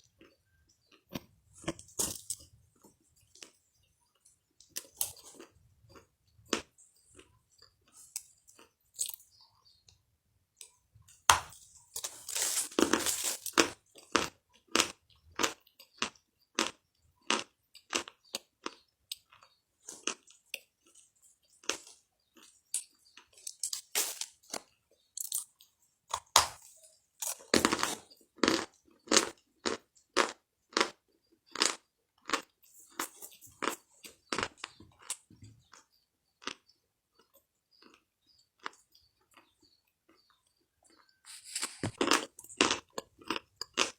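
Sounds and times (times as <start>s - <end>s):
crunchy food being chewed: 0.0s - 10.0s, 10.6s - 43.9s.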